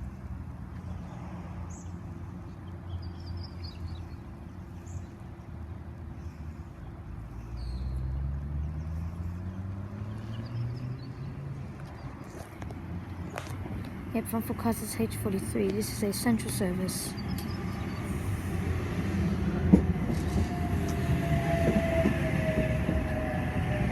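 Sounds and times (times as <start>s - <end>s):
small birds chirping: 1.0s - 18.7s
electric train humming: 13.8s - 23.9s.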